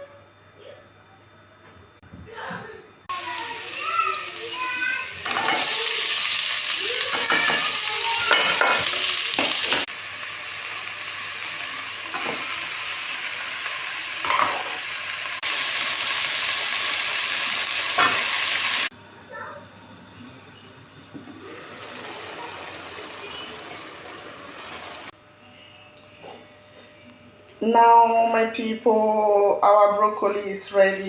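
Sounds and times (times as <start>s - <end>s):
food sizzling in a frying pan: 3.1s - 18.9s, 21.3s - 25.1s.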